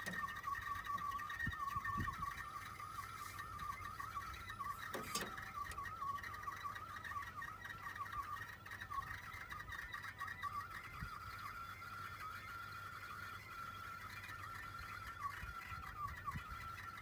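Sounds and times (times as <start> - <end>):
warbling bubbling air conditioning: 0.0 - 17.0.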